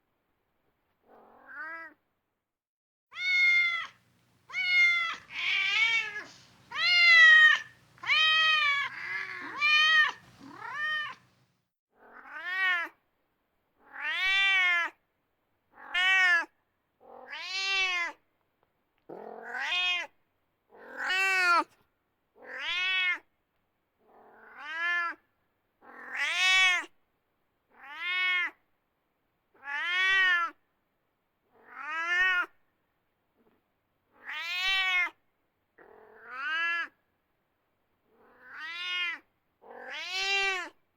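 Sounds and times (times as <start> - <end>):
cat meowing: 3.1 - 11.3, 38.4 - 39.2, 39.8 - 40.8.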